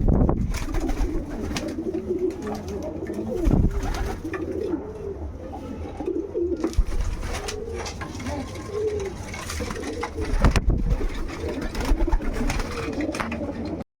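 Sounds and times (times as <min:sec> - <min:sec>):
pigeons cooing: 0:00.5 - 0:13.8.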